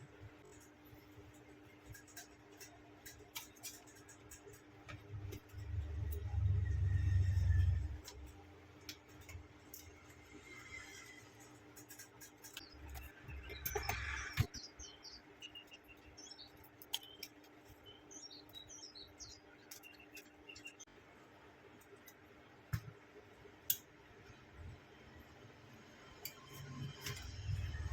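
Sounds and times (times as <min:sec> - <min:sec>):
faint high bird chirps: 0:12.5 - 0:20.9.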